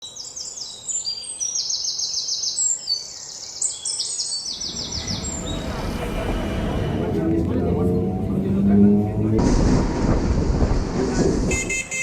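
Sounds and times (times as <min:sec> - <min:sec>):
songbirds singing trills: 0:00.0 - 0:05.8
low rumble: 0:04.5 - 0:11.5.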